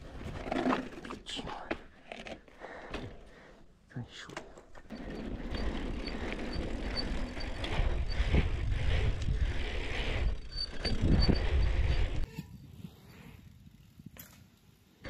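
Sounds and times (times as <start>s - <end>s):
bike rolling rumble: 4.8s - 15.0s.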